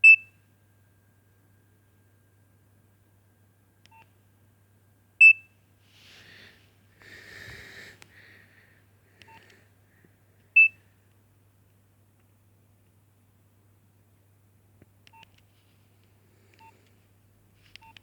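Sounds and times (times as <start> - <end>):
mobile phone beeps: 5.2 - 5.5, 9.3 - 9.5, 10.6 - 10.8
soft hiss: 5.7 - 11.3.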